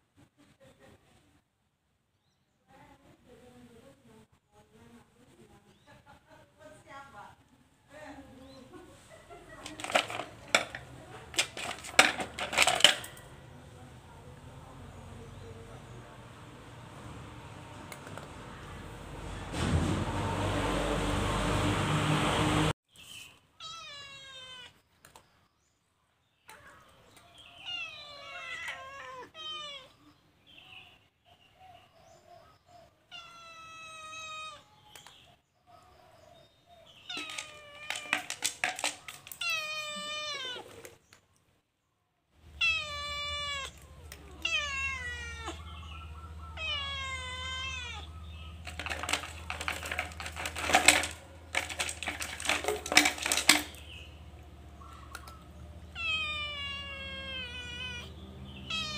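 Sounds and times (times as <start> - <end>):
sharp clicks and crackles: 9.6 - 13.3, 37.2 - 39.4, 48.6 - 54.0
cat meowing: 23.6 - 24.8, 27.6 - 30.1, 33.1 - 34.7, 39.3 - 41.0, 42.5 - 45.8, 46.5 - 48.3, 55.9 - 58.9.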